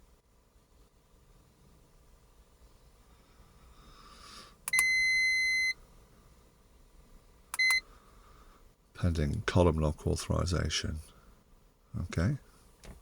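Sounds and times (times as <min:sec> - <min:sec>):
short beep: 0:04.7 - 0:05.8, 0:07.6 - 0:07.8.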